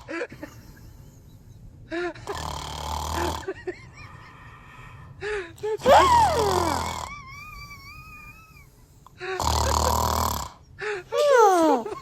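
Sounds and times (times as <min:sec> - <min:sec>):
person snoring: 0:02.2 - 0:03.6, 0:05.8 - 0:07.2, 0:09.4 - 0:10.6.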